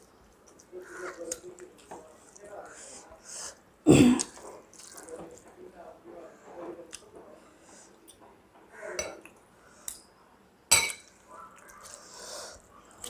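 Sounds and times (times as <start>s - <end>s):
dishes clinking: 10.7s - 11.2s.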